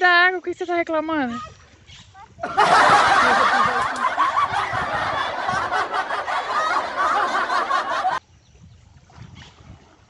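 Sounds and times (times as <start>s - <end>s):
loud dense laughter: 2.4s - 8.2s
overlapping voices: 2.4s - 8.2s.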